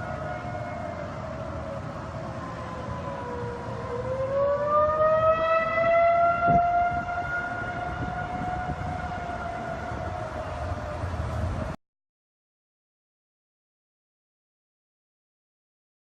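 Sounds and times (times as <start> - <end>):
warning siren wailing: 0.0 - 11.8.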